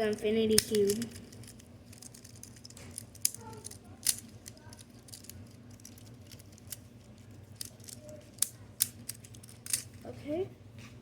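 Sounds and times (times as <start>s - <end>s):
fidget toy clicking: 0.5s - 6.8s.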